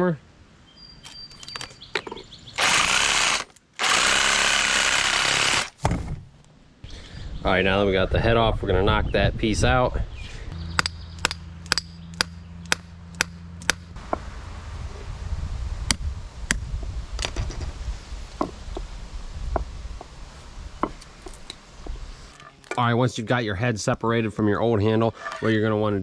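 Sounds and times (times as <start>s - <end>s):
hammer strikes: 10.7s - 13.8s.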